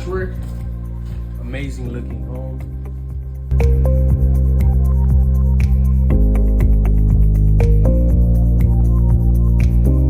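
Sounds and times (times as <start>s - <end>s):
electronic music with heavy bass: 0.0s - 10.0s.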